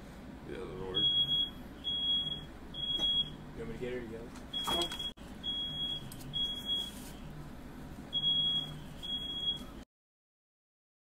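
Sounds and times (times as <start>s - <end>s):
smoke alarm beeping: 0.9s - 3.4s, 4.5s - 7.1s, 8.1s - 9.8s.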